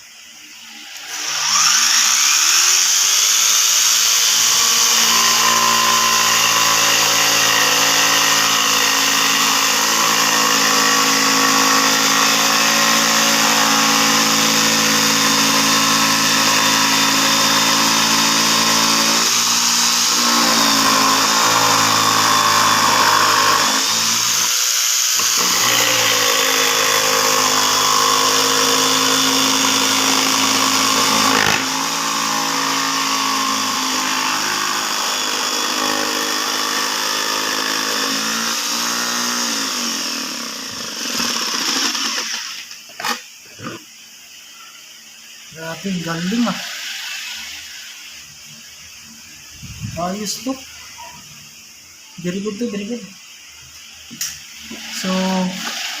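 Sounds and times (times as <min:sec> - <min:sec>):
electric jigsaw motor running: 0:00.5 - 0:43.8.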